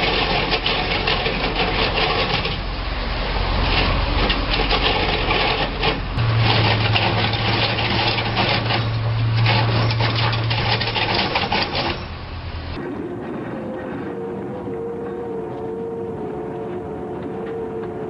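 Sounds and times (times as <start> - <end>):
heavy machinery rattling: 0.0 - 18.0
machinery hum: 0.0 - 18.0.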